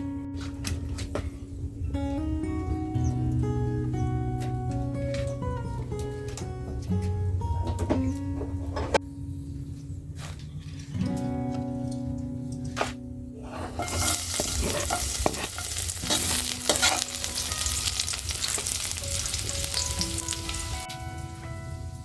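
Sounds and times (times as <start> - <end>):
utensil clinking and scraping: 13.6 - 20.9
food sizzling in hot oil: 13.8 - 22.0.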